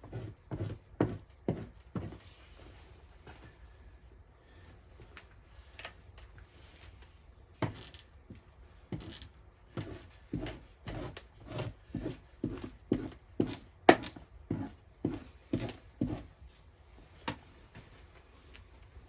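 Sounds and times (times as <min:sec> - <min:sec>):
knife scraping hide: 0:08.9 - 0:16.7.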